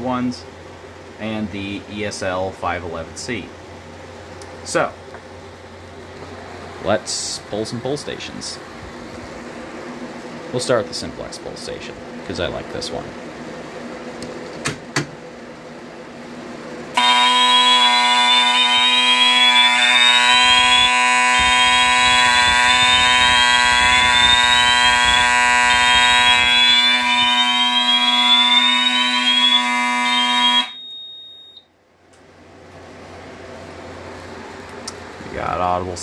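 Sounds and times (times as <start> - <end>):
loud scratchy alarm horn: 17.0 - 31.6
whooping alarm sweeps: 17.0 - 31.7.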